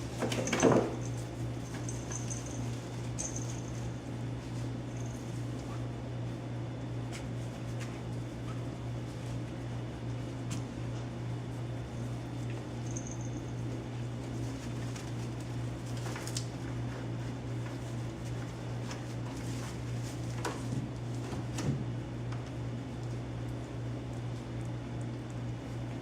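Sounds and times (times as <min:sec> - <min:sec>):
puppies scuffling: 0:00.0 - 0:06.0, 0:07.0 - 0:11.1, 0:11.9 - 0:22.5
low steady hum: 0:00.0 - 0:26.0.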